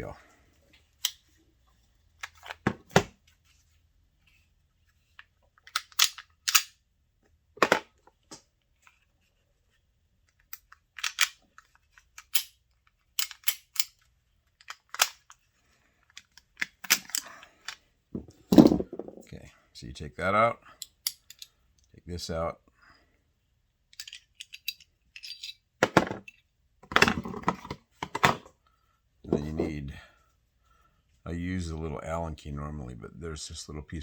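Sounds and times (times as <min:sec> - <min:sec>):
small hard parts clicking: 0:13.2 - 0:14.0.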